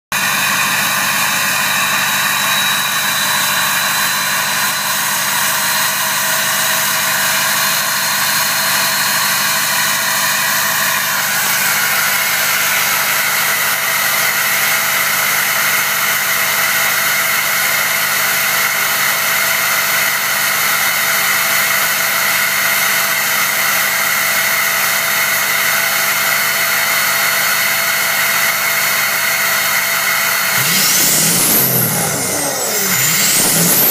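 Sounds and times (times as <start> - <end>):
high turbo whistle: 0.2 - 5.6, 30.5 - 33.9
diesel engine running: 30.5 - 33.9.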